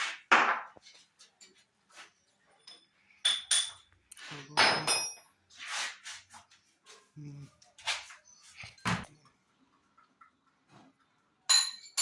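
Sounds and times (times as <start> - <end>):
metal tools knocking and clinking: 2.6 - 3.9, 4.6 - 5.3, 11.5 - 12.0.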